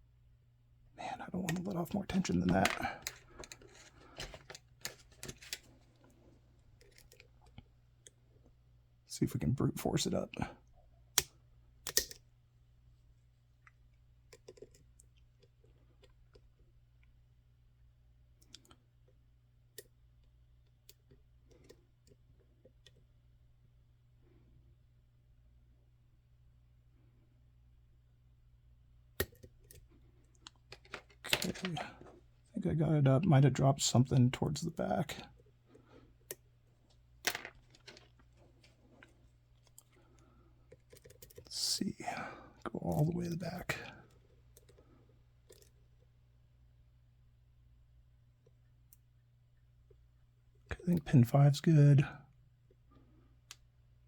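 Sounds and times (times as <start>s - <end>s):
lock pick clicking in a lock: 11.9s - 12.2s.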